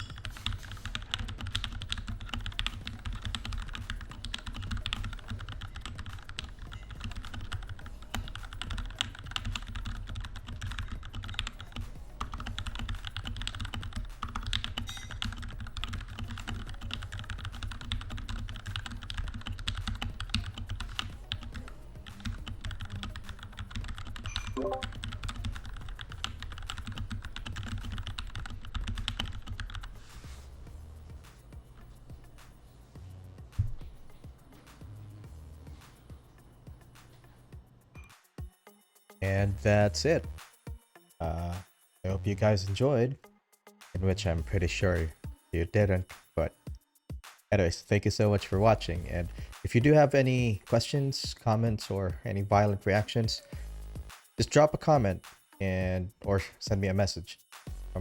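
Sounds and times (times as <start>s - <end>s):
mechanical keyboard typing: 0.0s - 29.9s.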